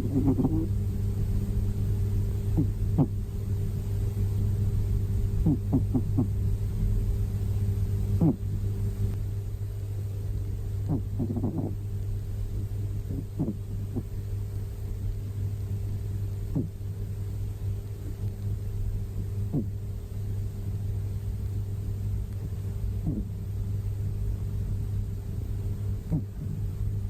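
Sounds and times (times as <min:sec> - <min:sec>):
cat snoring: 0:00.0 - 0:00.7, 0:02.5 - 0:03.2, 0:05.4 - 0:06.4, 0:08.2 - 0:08.4, 0:10.8 - 0:11.8, 0:13.0 - 0:14.2, 0:16.4 - 0:16.9, 0:19.4 - 0:19.8, 0:22.9 - 0:23.5, 0:26.0 - 0:26.7
steady low rumble: 0:00.0 - 0:27.0.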